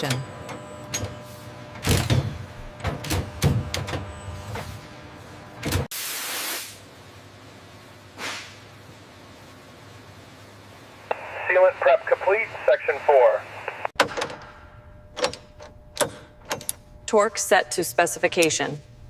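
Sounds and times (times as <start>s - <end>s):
knocks and clanks: 14.0s - 14.5s.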